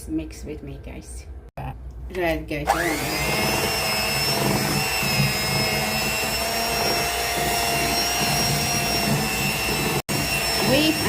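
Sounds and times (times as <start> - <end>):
electric mixer whining: 2.6 - 11.0.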